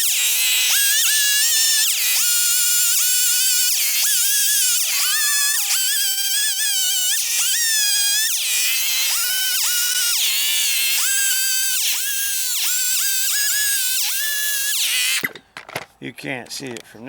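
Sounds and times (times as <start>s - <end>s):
chainsaw cutting wood: 0.0s - 15.4s.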